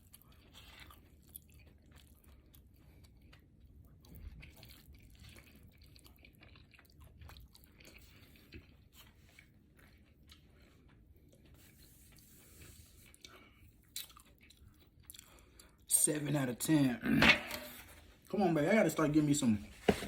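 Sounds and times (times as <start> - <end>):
person chewing: 0.0 - 15.9.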